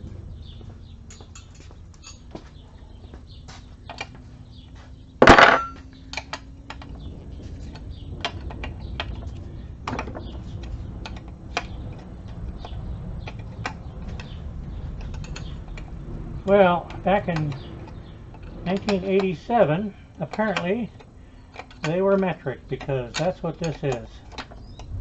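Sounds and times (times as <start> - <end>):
loud metallic clank: 5.2 - 5.8
metal tools clinking: 5.2 - 6.3.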